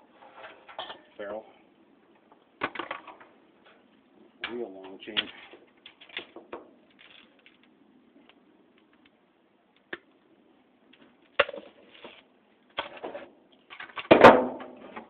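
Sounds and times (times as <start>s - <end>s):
metal parts clattering: 6.9s - 7.7s.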